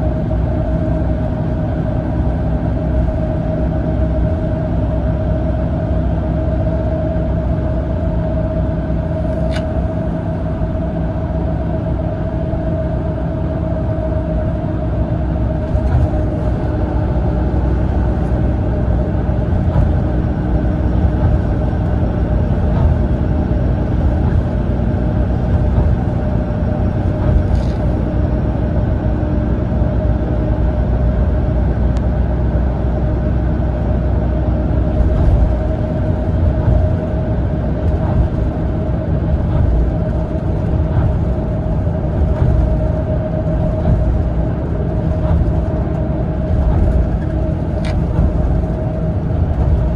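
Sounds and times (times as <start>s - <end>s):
coach engine and tyre rumble: 0.0s - 49.9s
mid-pitched whine: 6.6s - 49.9s
interior rattle clicks: 9.2s - 10.2s, 15.6s - 28.6s, 37.8s - 49.9s.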